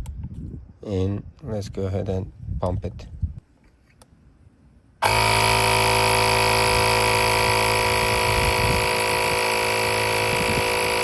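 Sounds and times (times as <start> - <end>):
air compressor humming: 5.0 - 11.0.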